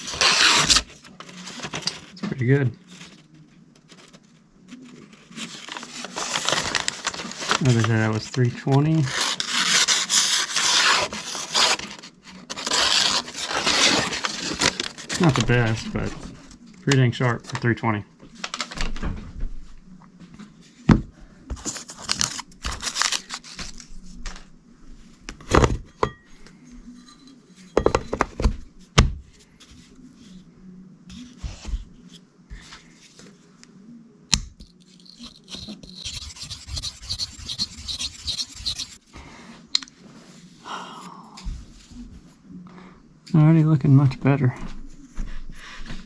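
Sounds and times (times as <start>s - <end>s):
knife scraping on sharpening stone: 35.0s - 39.0s.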